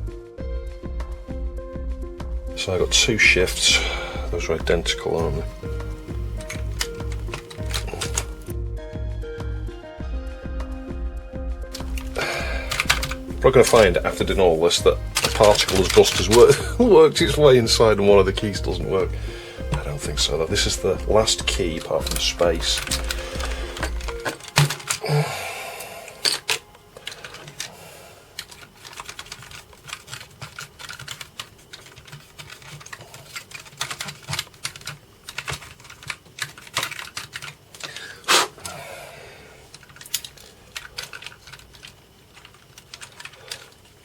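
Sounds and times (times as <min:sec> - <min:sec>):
keyboard plastic clicks and taps: 0:02.9 - 0:08.5, 0:11.7 - 0:16.8, 0:18.4 - 0:25.1, 0:28.4 - 0:38.0.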